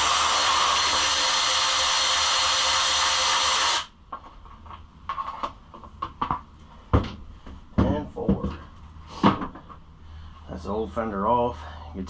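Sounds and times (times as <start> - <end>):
power drill whirring: 0.0 - 3.9.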